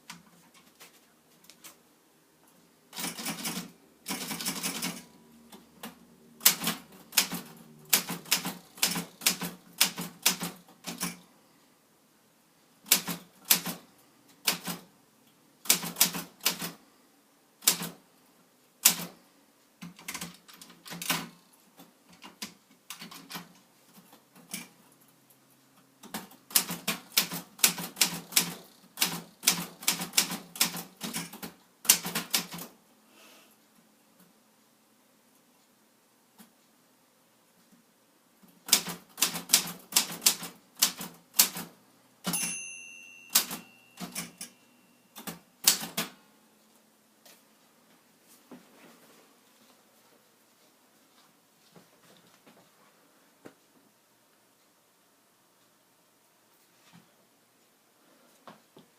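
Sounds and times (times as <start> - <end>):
typewriter keys clattering: 2.9 - 5.1, 43.3 - 44.6.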